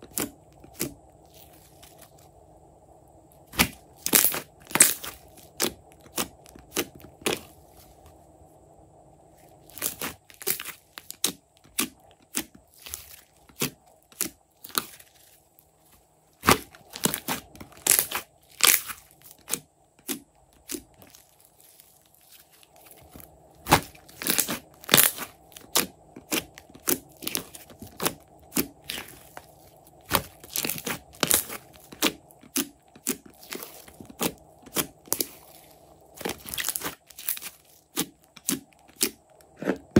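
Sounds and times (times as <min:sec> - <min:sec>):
slime crackling and popping: 0:03.4 - 0:07.4, 0:09.6 - 0:15.3, 0:16.4 - 0:39.3.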